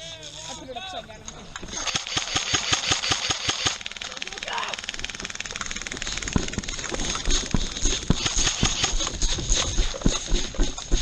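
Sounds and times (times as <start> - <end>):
footsteps on dry ground: 6.0 - 11.0.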